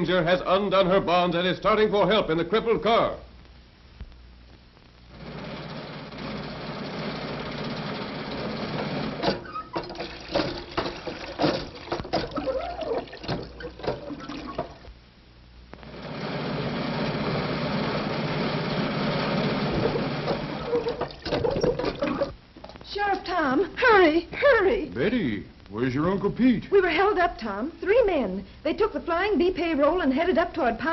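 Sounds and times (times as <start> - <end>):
old car running: 5.2 - 12.3, 16.0 - 20.9.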